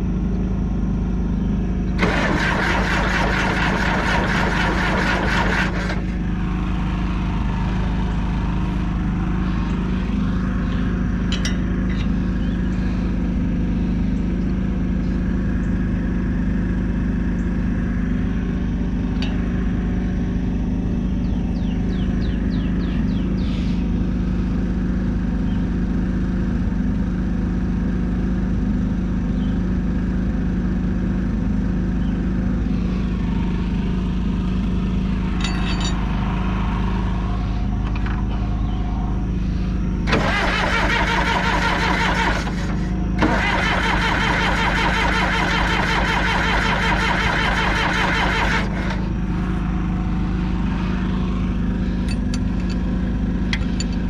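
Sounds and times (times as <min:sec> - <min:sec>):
low engine hum: 0:00.0 - 0:54.0
diesel engine starter cranking: 0:02.0 - 0:12.6, 0:34.6 - 0:38.8, 0:40.0 - 0:49.5.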